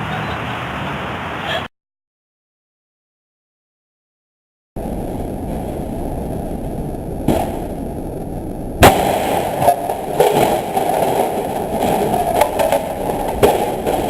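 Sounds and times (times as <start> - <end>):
loud bang: 4.8 - 14.0
sharp knocks: 7.2 - 7.7
rattling clatter: 9.3 - 14.0.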